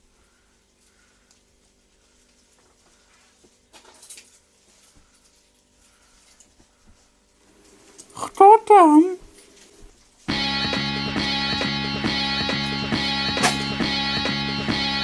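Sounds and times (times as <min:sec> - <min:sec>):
faint rustling: 0:00.0 - 0:08.2.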